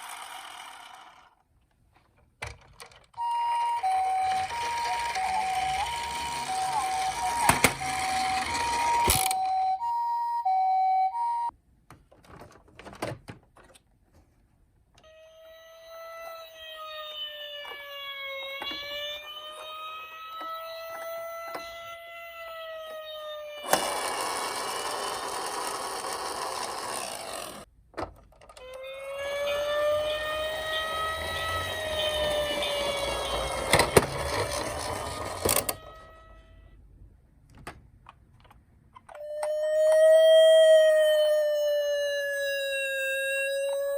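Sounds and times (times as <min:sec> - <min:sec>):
electronic wailing siren: 0:03.2 - 0:11.5, 0:15.0 - 0:26.3, 0:28.6 - 0:36.7, 0:39.1 - 0:43.9
two-tone toy ambulance siren: 0:03.2 - 0:11.6, 0:15.0 - 0:27.7, 0:28.6 - 0:36.8, 0:39.1 - 0:43.9.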